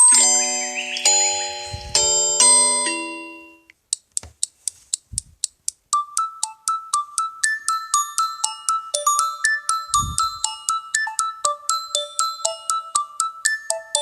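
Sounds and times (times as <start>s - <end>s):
mallet-like ringtone melody: 0.0s - 3.7s, 6.0s - 14.0s
phone chime: 0.0s - 3.7s
ticking clicks: 3.7s - 14.0s.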